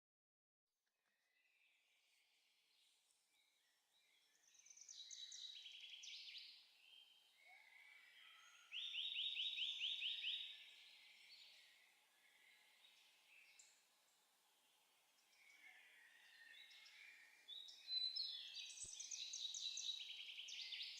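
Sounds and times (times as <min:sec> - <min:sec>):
songbirds singing: 0:01.0 - 0:20.9.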